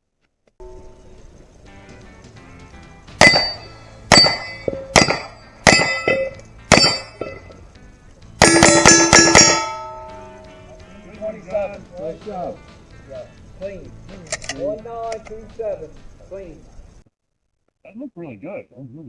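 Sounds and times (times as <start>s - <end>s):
metallic clang of steel targets: 0.6s - 10.9s
pistol shots: 3.1s - 7.6s, 8.4s - 10.7s.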